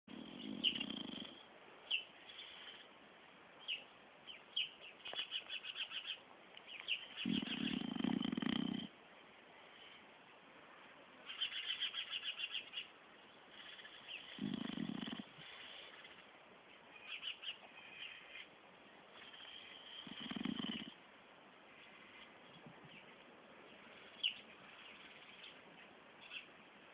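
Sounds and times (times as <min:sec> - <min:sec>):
dog snoring: 0:00.1 - 0:01.5, 0:07.2 - 0:09.0, 0:13.6 - 0:16.0, 0:19.2 - 0:21.0.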